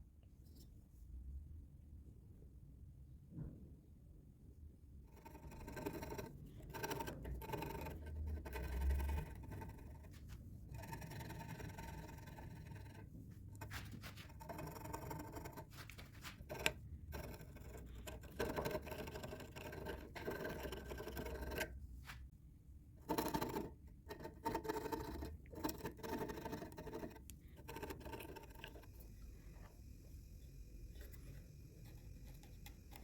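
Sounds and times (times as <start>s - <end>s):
tool scraping wood: 5.1s - 22.2s, 23.0s - 28.9s.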